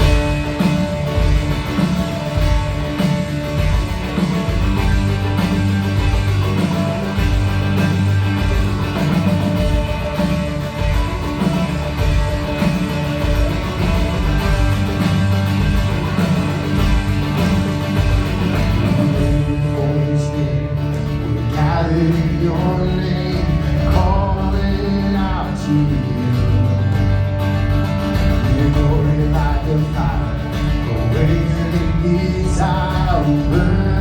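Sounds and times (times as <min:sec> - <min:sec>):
band playing instrumental: 0:00.0 - 0:34.0.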